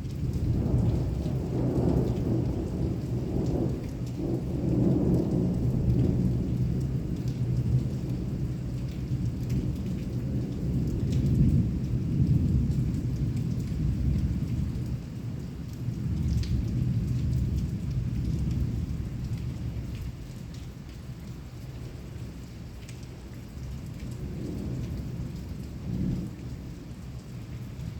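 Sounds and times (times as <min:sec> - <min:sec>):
heavy rain pouring: 0:00.0 - 0:27.9
raindrops ticking: 0:00.0 - 0:27.9
rolling thunder: 0:00.2 - 0:08.6.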